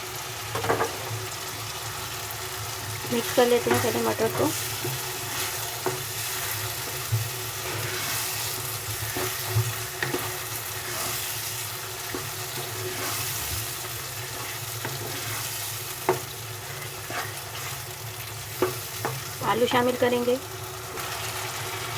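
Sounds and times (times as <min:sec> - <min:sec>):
oil sizzling in a pan: 0:00.0 - 0:21.9
spoon scraping against a pan: 0:03.2 - 0:20.0.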